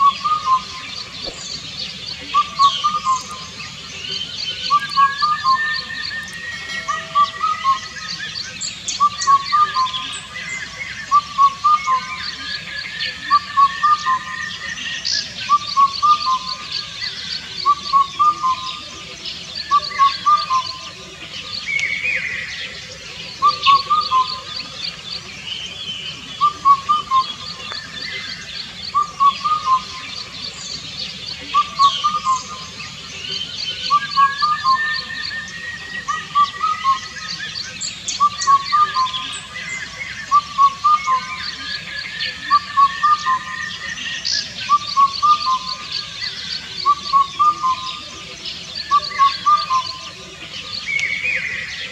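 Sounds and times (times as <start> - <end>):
cuckoo four-note call: 4.6 - 8.2, 38.1 - 50.2.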